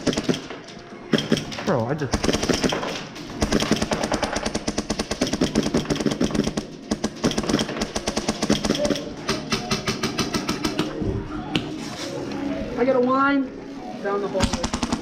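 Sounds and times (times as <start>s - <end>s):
airsoft guns firing full-auto: 0.0s - 0.5s, 1.1s - 9.1s, 14.4s - 15.0s.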